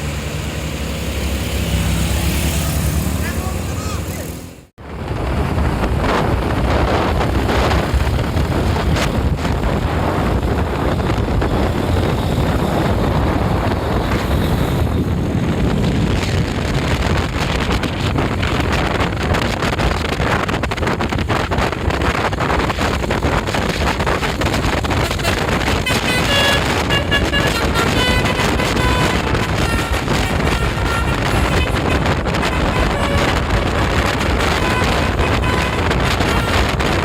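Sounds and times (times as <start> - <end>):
bus engine running: 0.0 - 37.0
wind buffeting microphone: 0.0 - 37.0
musical bus horn tune: 24.9 - 37.0.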